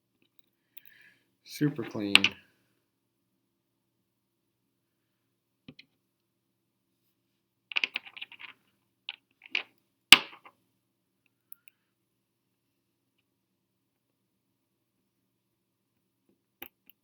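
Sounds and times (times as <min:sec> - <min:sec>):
small parts clicking and rattling: 0:07.7 - 0:10.5.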